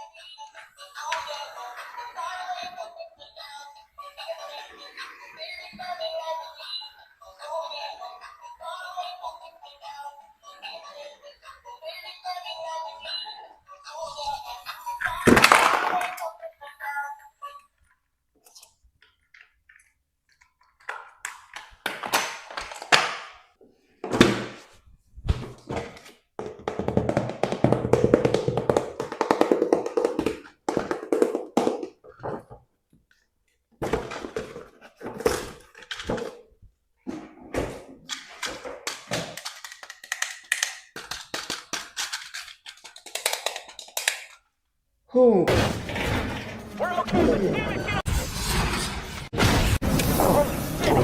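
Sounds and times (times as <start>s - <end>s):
plastic figures tapping and knocking: 18.5s - 23.4s, 25.7s - 33.2s, 38.1s - 44.5s.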